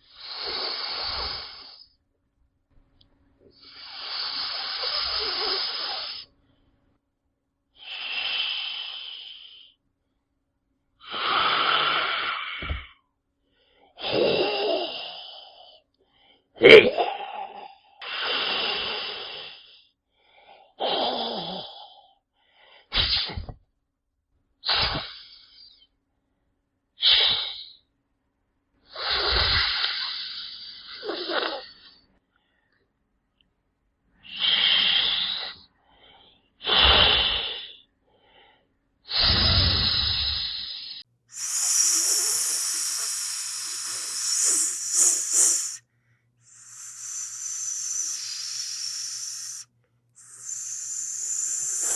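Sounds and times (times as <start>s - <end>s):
snake hissing: 0.0s - 1.8s, 3.6s - 6.3s, 39.1s - 45.8s, 46.4s - 51.9s.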